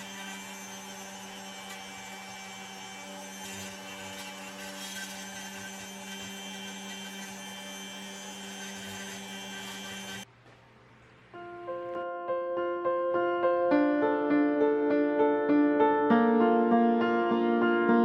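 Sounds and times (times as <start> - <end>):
electric workshop tool humming: 0.0 - 10.3.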